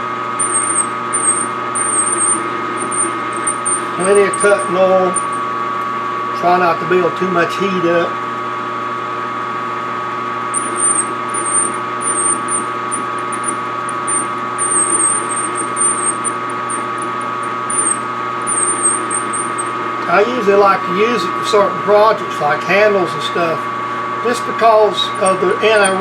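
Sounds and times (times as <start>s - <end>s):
metal lathe whine: 0.0s - 8.2s, 9.7s - 26.0s
high-pitched cutting squeal: 0.4s - 5.5s, 10.6s - 19.8s.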